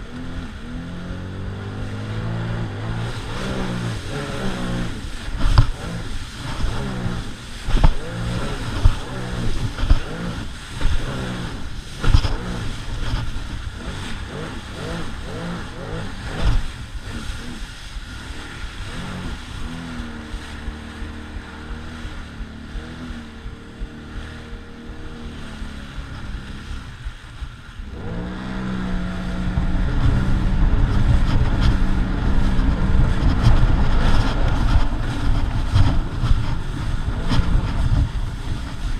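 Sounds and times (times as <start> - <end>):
personal watercraft engine running: 0.0 - 38.9.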